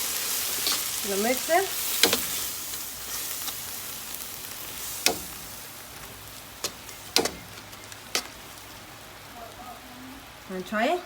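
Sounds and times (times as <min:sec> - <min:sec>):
meat sizzling in a frying pan: 0:00.0 - 0:10.9
utensil knocking against pan: 0:05.1 - 0:05.4.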